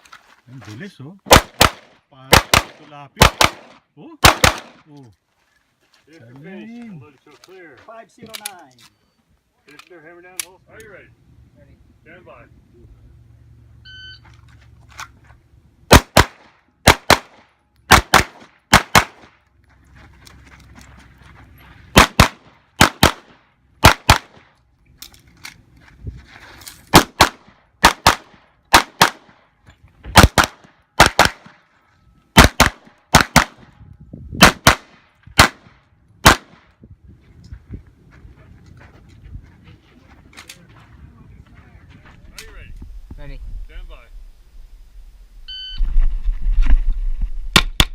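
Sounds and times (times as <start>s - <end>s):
handgun shots in pairs: 1.3s - 4.8s, 15.9s - 19.4s, 22.0s - 24.6s, 26.9s - 29.4s, 30.1s - 31.6s, 32.4s - 33.7s, 34.4s - 36.7s, 47.6s - 47.9s.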